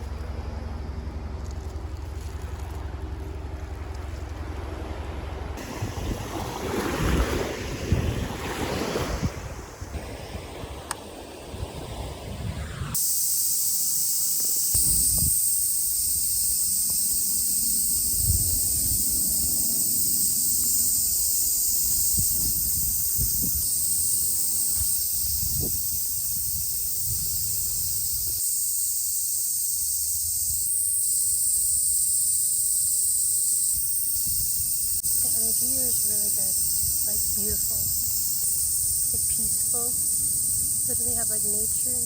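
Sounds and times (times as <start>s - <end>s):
insects buzzing: 0.0s - 42.0s
wind rumble on microphone: 1.6s - 13.0s, 14.8s - 15.5s, 17.9s - 19.8s, 21.5s - 28.4s, 33.7s - 39.9s.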